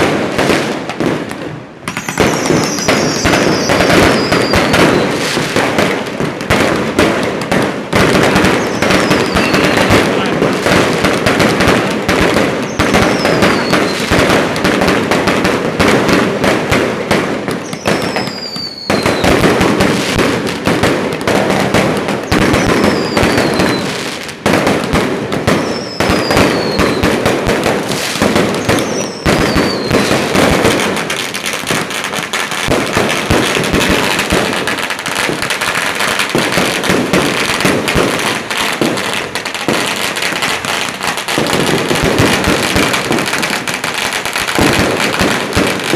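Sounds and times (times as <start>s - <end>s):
firecrackers crackling: 0.0s - 45.9s.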